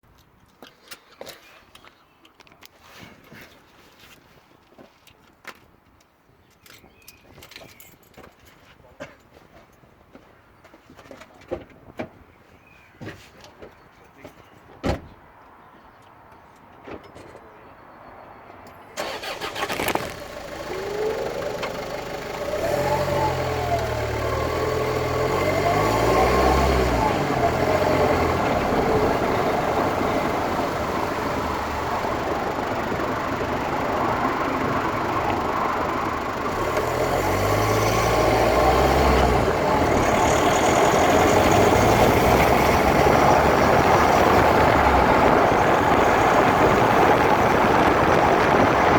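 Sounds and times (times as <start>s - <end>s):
road noise: 0.0s - 48.9s
car engine: 19.0s - 48.9s.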